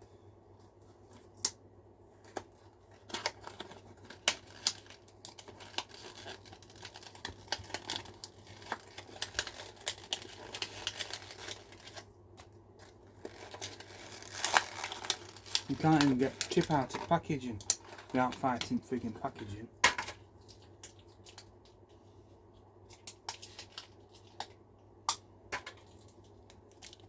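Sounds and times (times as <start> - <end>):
plastic packaging crinkling: 2.2 - 21.7, 22.8 - 24.6.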